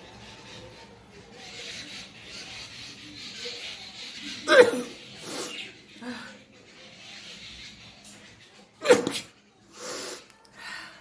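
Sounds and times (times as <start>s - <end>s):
person sneezing: 8.8s - 9.3s.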